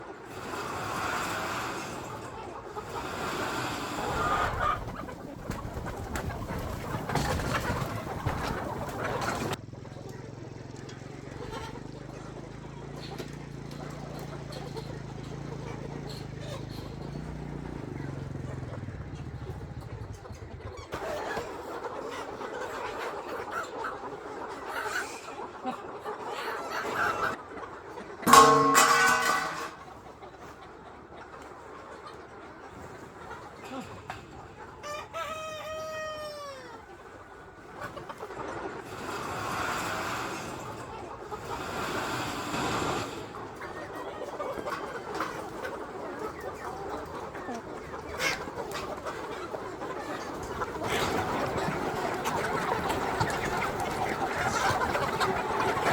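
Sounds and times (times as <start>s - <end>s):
chickens clucking: 0.0s - 55.9s
loud pitched chicken call: 0.3s - 9.6s, 18.0s - 30.6s, 32.7s - 37.2s.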